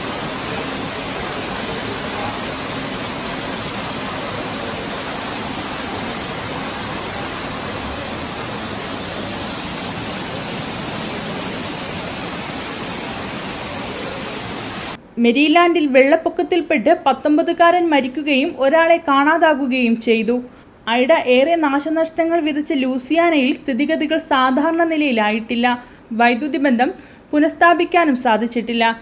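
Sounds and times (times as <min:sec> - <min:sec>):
water rushing: 0:00.0 - 0:15.0.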